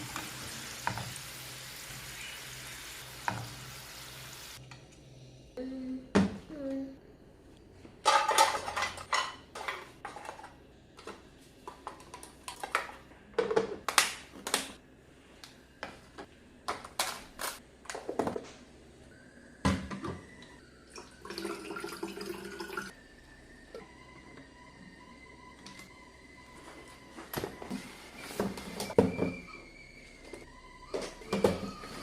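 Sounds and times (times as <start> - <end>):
tap water running: 0.0 - 4.6, 20.9 - 22.9
dishes and utensils clattering: 8.0 - 10.6.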